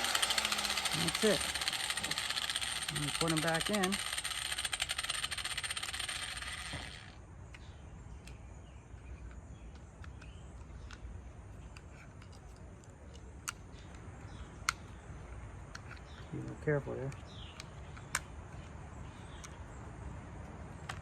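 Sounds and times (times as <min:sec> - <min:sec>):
light clicks and taps of parts: 0:07.5 - 0:15.0, 0:15.6 - 0:19.6.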